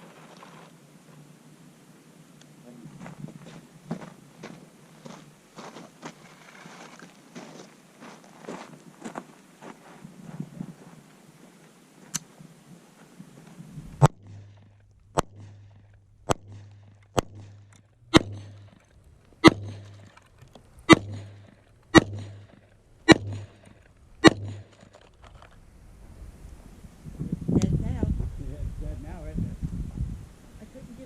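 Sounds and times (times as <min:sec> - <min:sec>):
rifle shots: 0:14.0 - 0:25.0.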